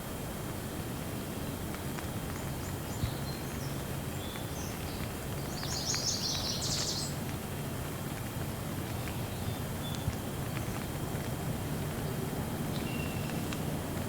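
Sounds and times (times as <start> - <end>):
steady rain: 0.0 - 14.0
birds chirping: 4.2 - 7.1.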